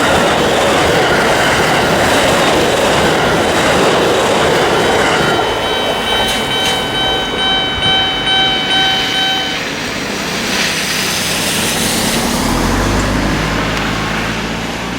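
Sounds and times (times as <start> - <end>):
level crossing warning bell: 0.0 - 10.5
passing train: 0.0 - 14.9.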